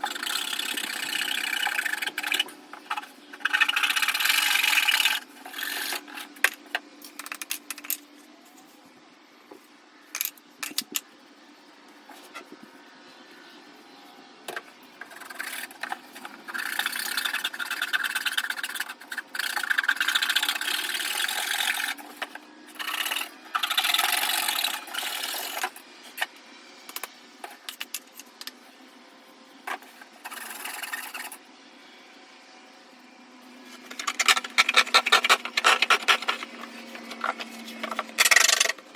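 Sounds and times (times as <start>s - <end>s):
cardboard rasping and scraping: 15.0s - 25.7s, 29.7s - 31.4s, 33.8s - 38.8s.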